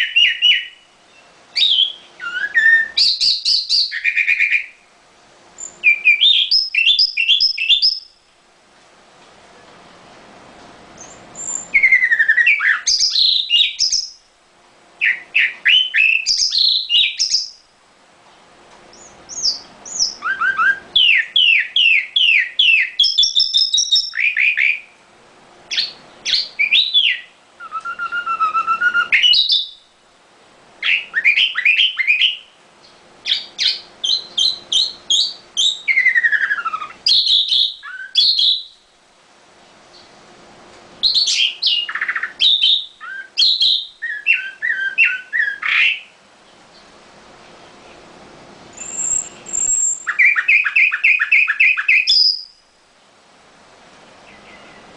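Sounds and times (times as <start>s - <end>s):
nightingale singing: 0.0s - 4.8s, 5.6s - 8.3s, 11.0s - 14.3s, 15.0s - 17.7s, 18.9s - 25.0s, 25.7s - 30.0s, 30.8s - 38.9s, 41.0s - 46.9s, 48.7s - 53.1s, 54.1s - 54.9s.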